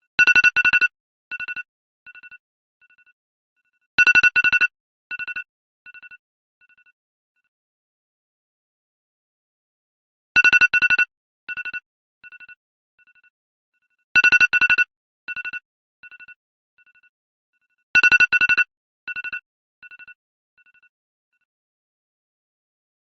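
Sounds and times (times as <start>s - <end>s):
phone alarm rapid beeps: 4.0s - 6.9s, 14.2s - 17.0s, 18.0s - 20.9s.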